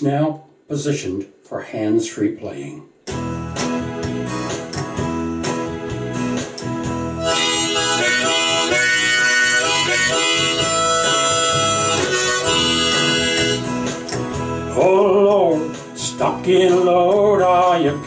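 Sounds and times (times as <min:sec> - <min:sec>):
strummed acoustic guitar: 0:03.1 - 0:18.0
harmonica playing: 0:07.0 - 0:14.7.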